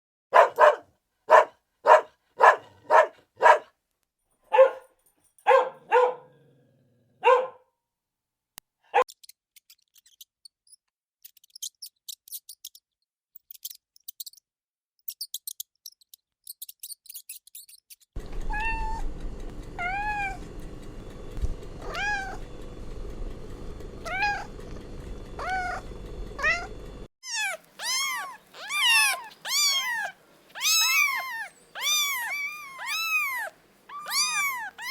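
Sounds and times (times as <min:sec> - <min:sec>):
steady background hum: 0:18.2 - 0:34.9
cat meowing: 0:18.4 - 0:19.1, 0:19.8 - 0:20.4, 0:21.8 - 0:22.5, 0:24.0 - 0:24.5, 0:25.4 - 0:25.8, 0:26.4 - 0:34.9
short sharp pet calls: 0:26.4 - 0:34.9.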